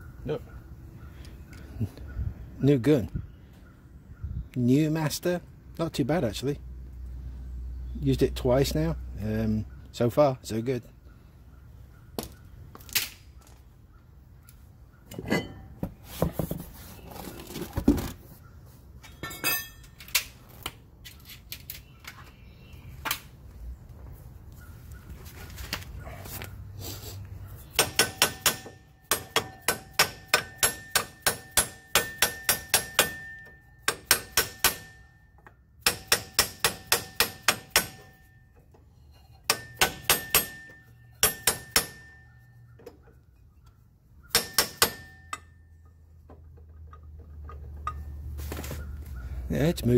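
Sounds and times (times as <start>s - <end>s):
tool knocks and clanks: 15.1s - 16.7s.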